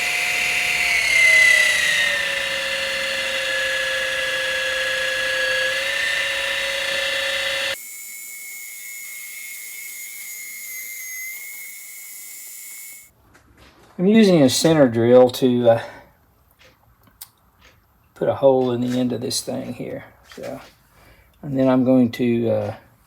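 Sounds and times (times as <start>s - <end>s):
small electric motor whining: 0.0s - 13.1s.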